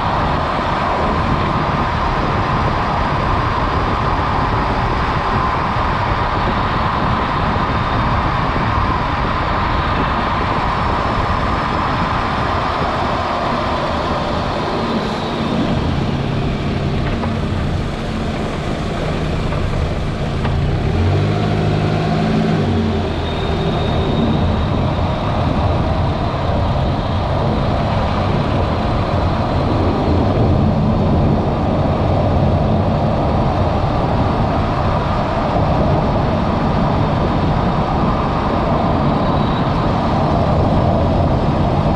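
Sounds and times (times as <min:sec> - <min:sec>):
road noise: 0:00.0 - 0:41.9
car engine running: 0:08.2 - 0:34.3.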